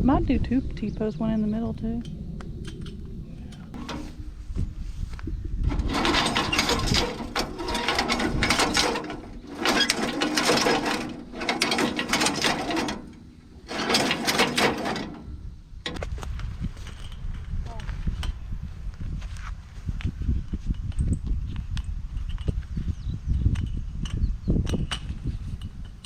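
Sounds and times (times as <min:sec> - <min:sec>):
mechanical ratcheting grating: 0:05.7 - 0:16.0.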